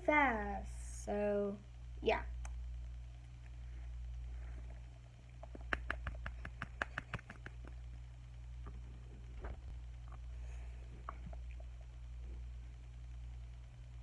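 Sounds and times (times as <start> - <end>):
steady low hum: 0.0 - 14.0
small sharp clicks and taps: 5.4 - 7.8.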